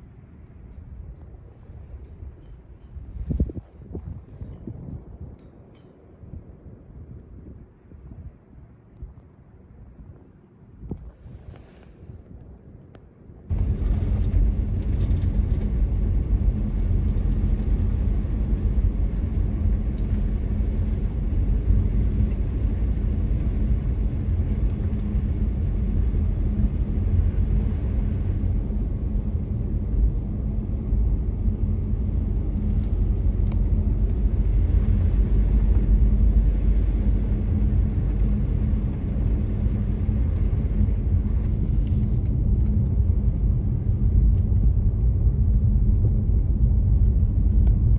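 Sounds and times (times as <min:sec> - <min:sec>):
car driving rumble: 0:13.5 - 0:47.9.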